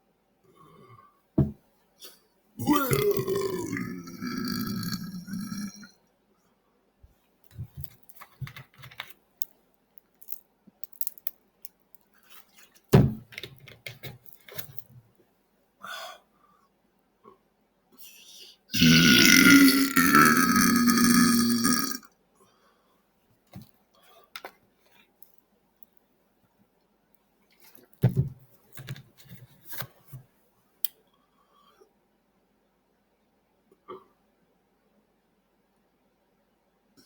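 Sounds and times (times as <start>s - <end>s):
man belching: 2.6s - 5.9s, 18.7s - 22.1s.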